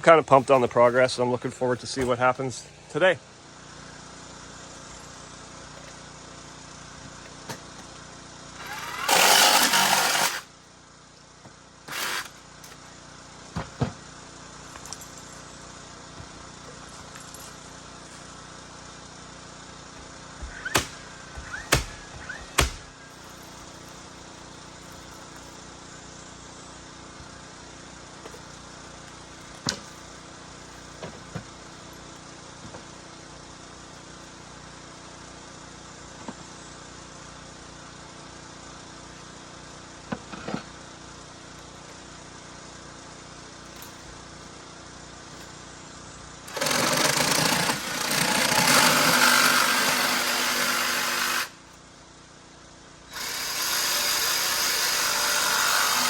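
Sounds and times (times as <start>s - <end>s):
sharp knocks: 20.4s - 22.9s.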